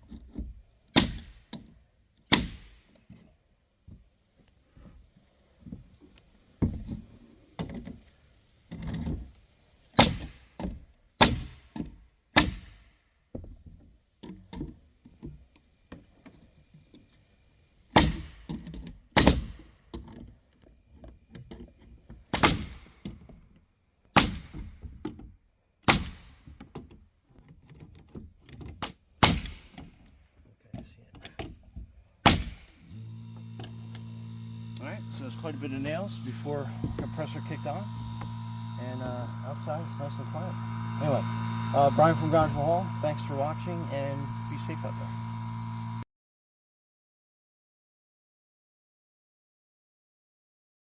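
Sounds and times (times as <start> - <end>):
palm nailer cracks: 32.3 - 42.8
air compressor motor humming: 32.7 - 46.0.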